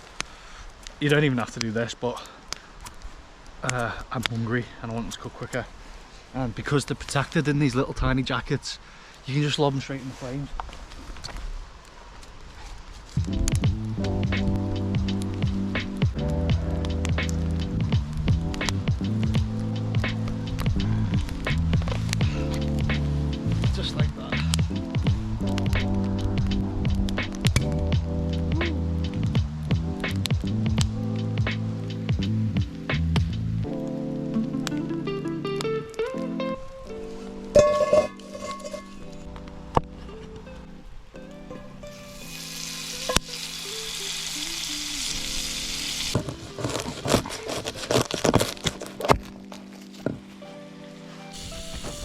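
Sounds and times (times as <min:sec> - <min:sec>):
fire crackles and pops: 0:00.0 - 0:50.0, 0:51.3 - 0:52.0
food sizzling over fire: 0:09.4 - 0:40.5, 0:41.3 - 0:49.1, 0:51.3 - 0:52.0
background music with sliding bass: 0:13.2 - 0:47.2, 0:51.2 - 0:52.0.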